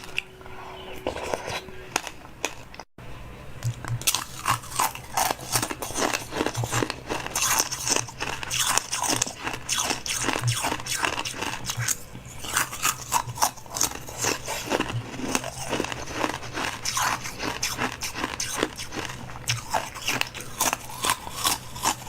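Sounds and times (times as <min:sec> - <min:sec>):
person chewing crunchy food: 0:00.0 - 0:02.9, 0:03.6 - 0:22.0.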